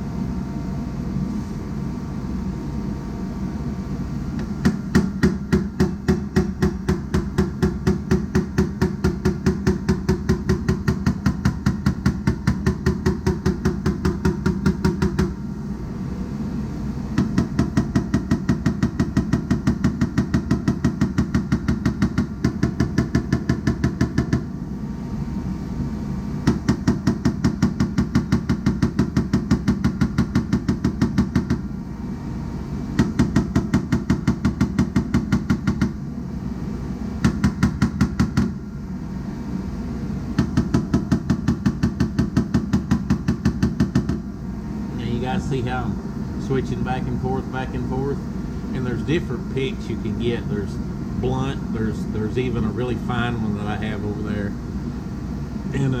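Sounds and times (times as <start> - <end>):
steady hum: 0.0 - 56.0
hammer tapping sheet metal: 4.4 - 15.4, 17.2 - 24.5, 40.4 - 44.2.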